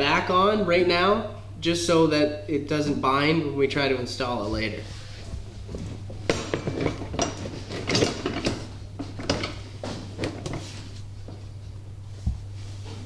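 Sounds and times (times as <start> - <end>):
metal clinks and clattering knocks: 5.6 - 11.0.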